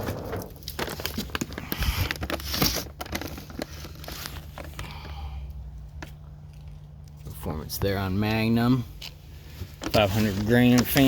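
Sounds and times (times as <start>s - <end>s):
cardboard packaging handled: 0.0s - 5.2s, 9.0s - 11.0s.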